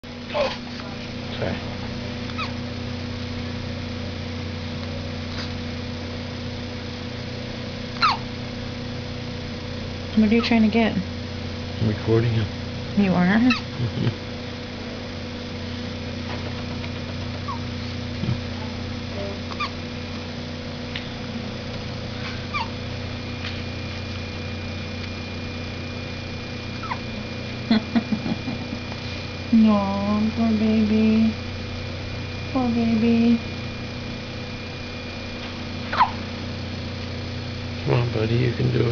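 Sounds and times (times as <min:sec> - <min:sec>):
steady machine hum: 0:00.0 - 0:38.9
dog hiccup squeaks: 0:02.4 - 0:02.6, 0:08.0 - 0:08.3, 0:13.5 - 0:13.7, 0:19.5 - 0:19.8, 0:22.5 - 0:22.8, 0:26.8 - 0:27.1, 0:35.9 - 0:36.2.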